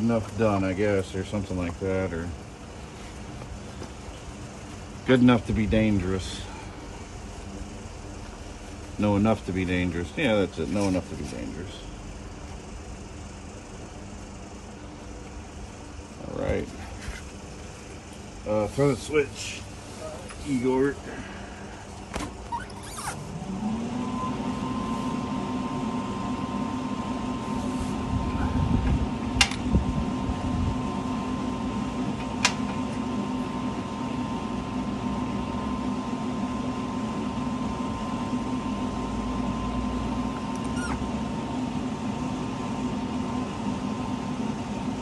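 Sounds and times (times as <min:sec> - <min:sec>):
machine motor humming: 0:21.8 - 0:45.0.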